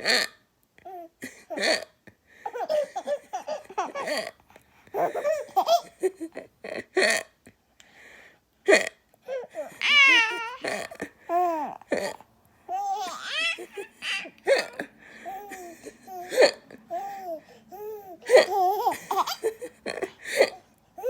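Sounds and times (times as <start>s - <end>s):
child hiccuping: 8.7s - 12.2s
child laughing: 9.7s - 12.1s, 12.8s - 16.7s, 18.2s - 20.5s.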